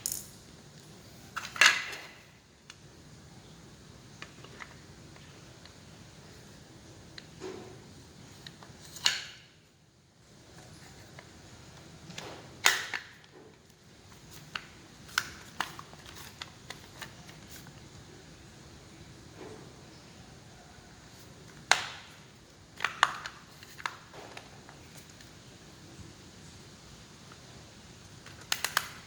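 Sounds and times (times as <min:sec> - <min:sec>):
small hard parts clicking: 0:00.0 - 0:02.2.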